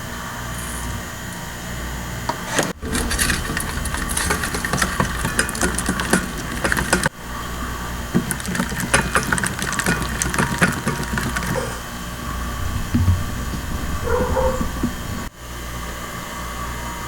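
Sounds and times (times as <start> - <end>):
beater clicking against bowl: 2.8 - 7.1, 8.2 - 11.8.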